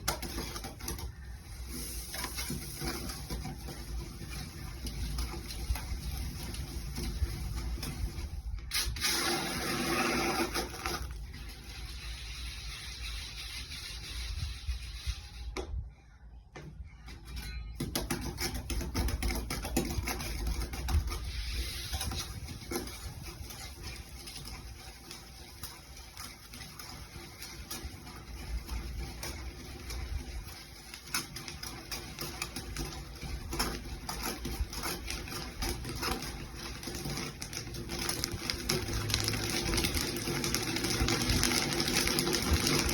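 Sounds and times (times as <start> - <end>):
dried peas popping while cooking: 22.7 - 42.9.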